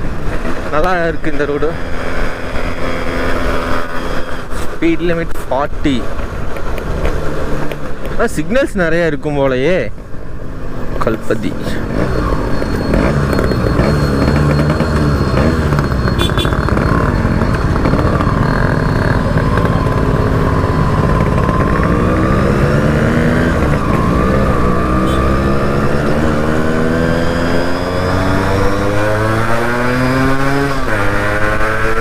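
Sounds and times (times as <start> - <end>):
two-stroke motorcycle engine: 11.8 - 32.0.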